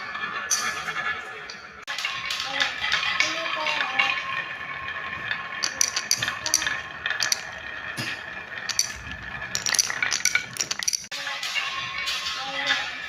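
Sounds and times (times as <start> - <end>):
marbles rolling on wooden track: 1.8 - 11.2
marbles clicking: 2.4 - 11.1.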